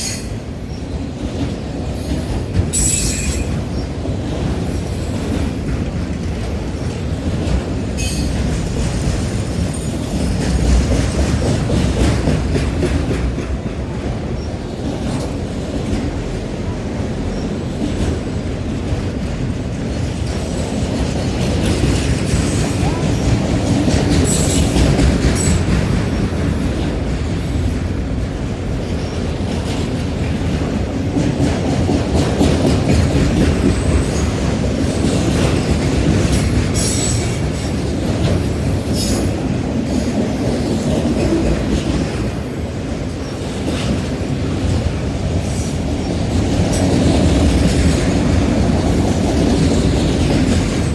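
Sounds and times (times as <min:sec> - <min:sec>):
train wheels rumbling on rails: 0:00.0 - 0:50.9
high wheel squeals: 0:02.8 - 0:03.6.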